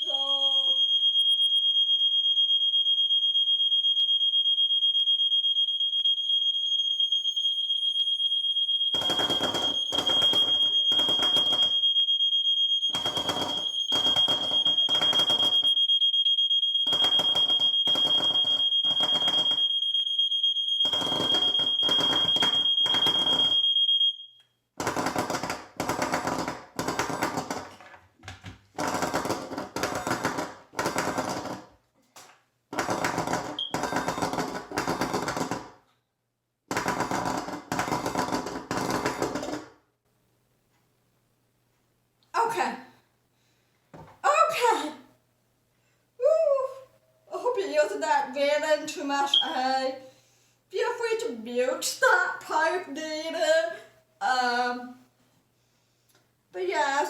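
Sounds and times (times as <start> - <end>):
smoke detector high tone: 0.0 - 24.6, 46.2 - 50.0
harsh alarm buzzing pulses: 5.7 - 24.1.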